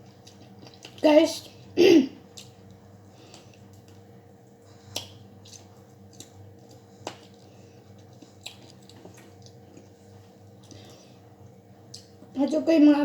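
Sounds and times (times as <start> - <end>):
wet chewing with smacks: 0.0 - 1.0, 2.2 - 4.1, 4.7 - 10.9
faint steady hum: 0.0 - 13.0.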